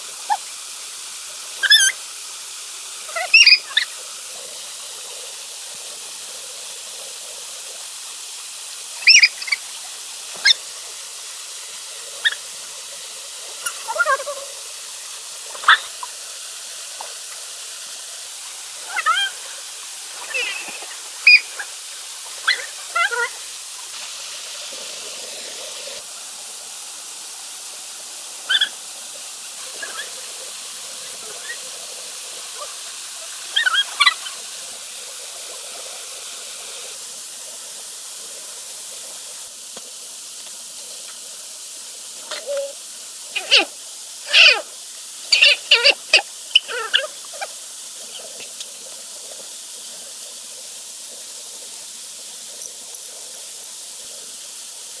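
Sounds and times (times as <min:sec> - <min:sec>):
waterfall rushing: 0:18.3 - 0:26.1, 0:28.3 - 0:34.9.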